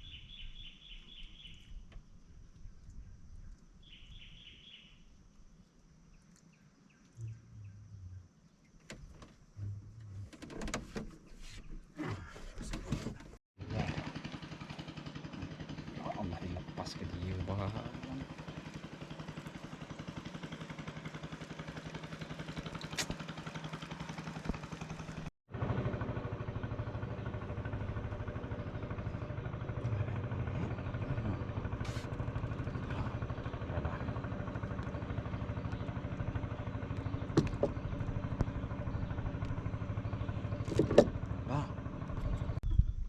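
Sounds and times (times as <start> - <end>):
small engine running: 13.0 - 42.7.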